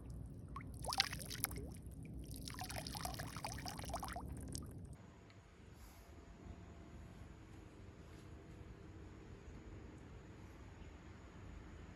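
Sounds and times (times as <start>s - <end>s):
water pouring and dripping: 0.0s - 5.0s.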